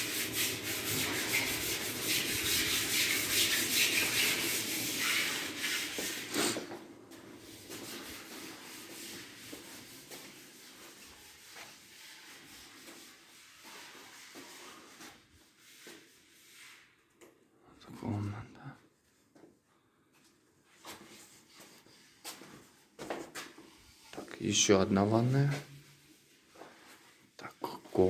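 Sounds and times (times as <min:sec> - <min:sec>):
dry rubbing and scraping: 0:00.0 - 0:06.6.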